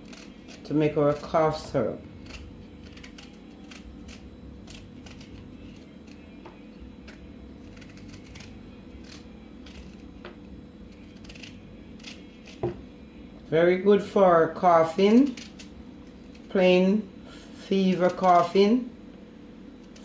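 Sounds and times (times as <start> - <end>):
faint steady hum: 0.0 - 20.0
knife slicing vegetable: 7.0 - 10.3.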